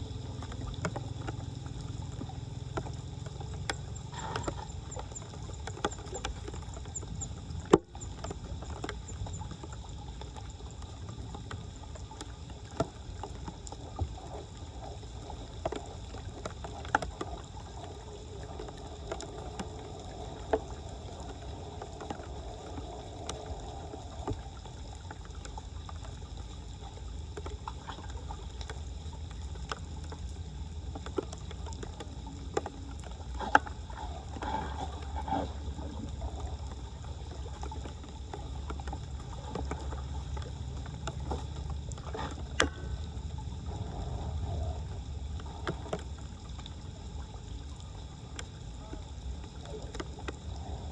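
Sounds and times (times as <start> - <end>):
floodwater sloshing and gurgling: 0.0 - 50.9
low rumble: 31.6 - 50.9.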